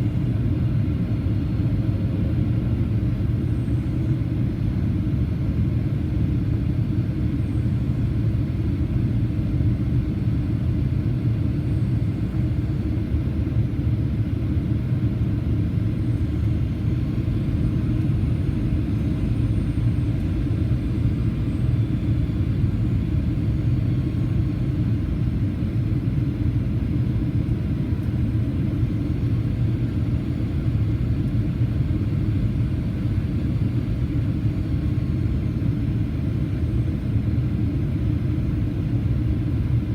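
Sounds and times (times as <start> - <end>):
airplane cabin rumble: 0.0 - 39.9.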